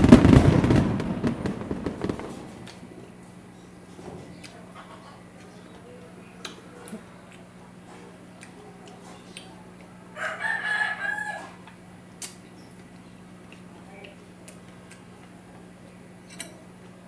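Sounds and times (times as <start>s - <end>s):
low steady hum: 0.0s - 7.6s
crunchy chewing clicks: 6.4s - 10.0s, 11.6s - 16.0s
rooster crowing: 10.0s - 11.8s.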